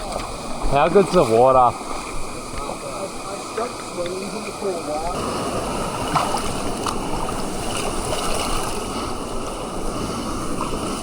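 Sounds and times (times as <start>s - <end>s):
water rushing and splashing: 0.0s - 11.0s
small splashy ticks: 6.1s - 8.8s.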